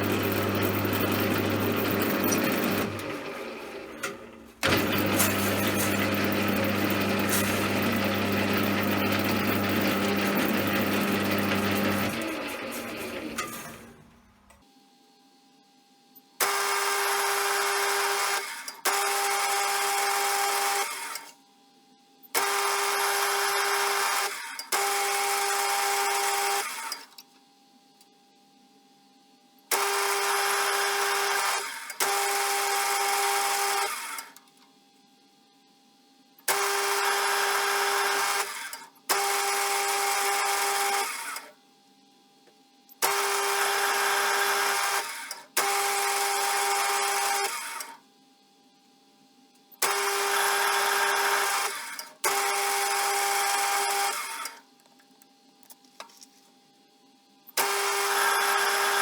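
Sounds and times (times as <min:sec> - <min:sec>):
power tool motor whine: 0:00.0 - 0:14.0.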